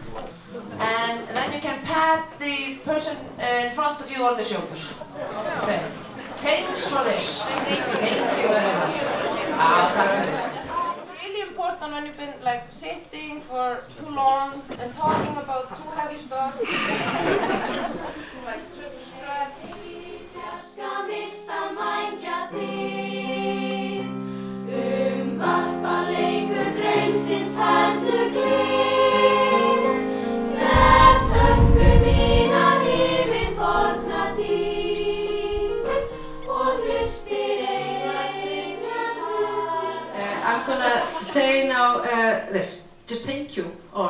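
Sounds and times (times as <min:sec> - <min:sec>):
choir singing in harmony: 0:05.2 - 0:10.8, 0:16.9 - 0:41.6
low rumble: 0:30.7 - 0:32.5.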